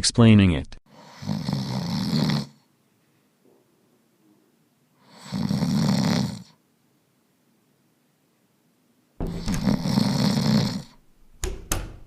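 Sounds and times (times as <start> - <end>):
person snoring: 0.9 - 2.6, 5.0 - 6.6, 9.2 - 11.0.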